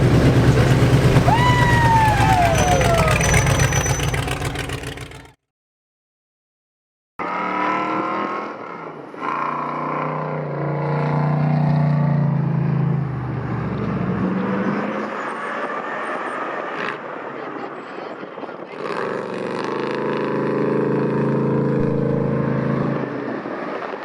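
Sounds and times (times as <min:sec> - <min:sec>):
race vehicle engine revving: 0:00.0 - 0:05.4, 0:18.9 - 0:23.5.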